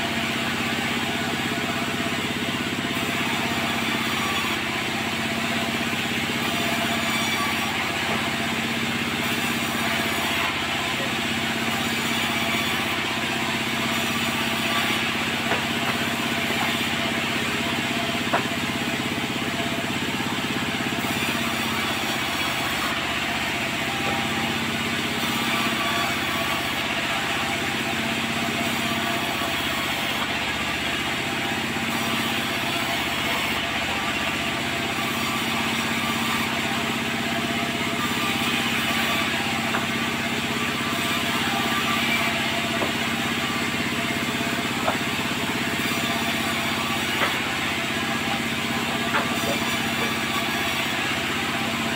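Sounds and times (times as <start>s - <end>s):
sawmill machinery running: 0.0s - 51.9s
sharp knocks: 44.8s - 45.1s, 47.1s - 47.5s.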